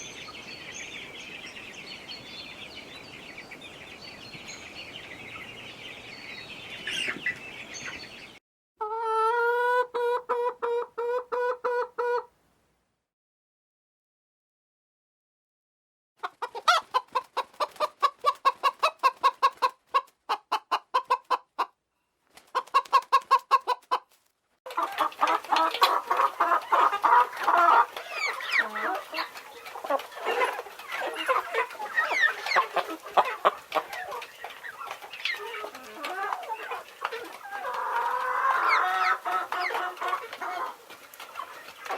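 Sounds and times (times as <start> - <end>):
flock of chickens clucking: 0.1 - 12.3, 16.2 - 21.8, 22.4 - 24.1, 24.7 - 41.9
hen clucking rapidly: 16.2 - 21.8, 22.5 - 24.1, 24.7 - 41.9.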